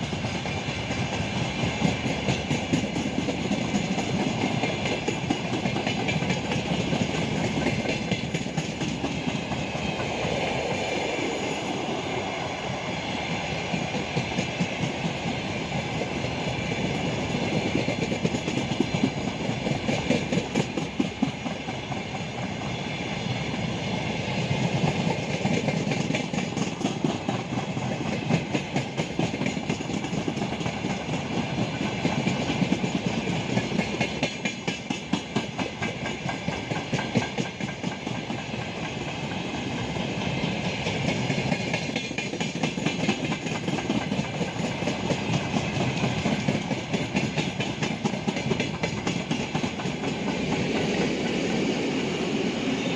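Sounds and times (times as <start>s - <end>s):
wheels clicking over rail joints: 0.0s - 10.4s, 24.7s - 51.6s
freight train rumbling past: 0.0s - 52.9s.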